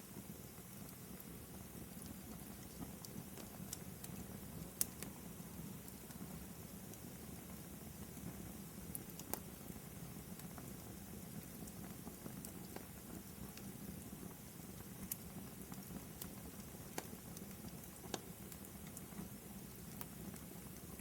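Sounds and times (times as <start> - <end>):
fireplace fire crackling: 0.0 - 21.0.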